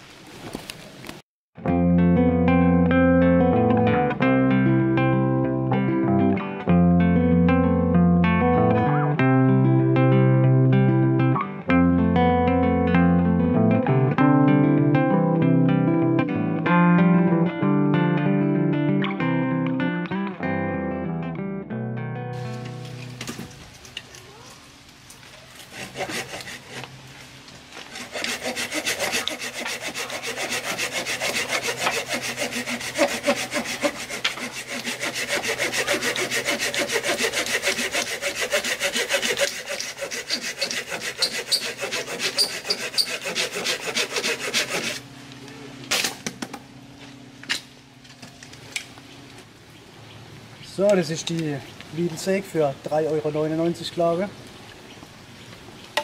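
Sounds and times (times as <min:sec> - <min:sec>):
hand saw cutting wood: 0:25.5 - 0:27.0, 0:27.8 - 0:45.0.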